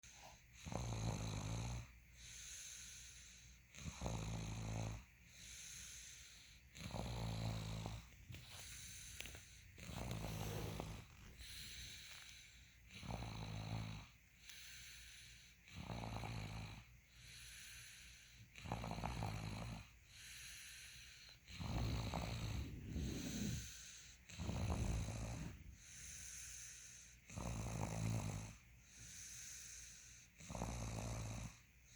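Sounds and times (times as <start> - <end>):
soft breathing: 5.2 - 6.8, 7.5 - 13.0, 14.0 - 15.7, 17.0 - 18.6, 20.0 - 27.3
person snoring: 6.8 - 9.1, 9.8 - 12.3, 12.9 - 14.9, 18.6 - 20.4, 21.5 - 28.6, 30.4 - 31.6.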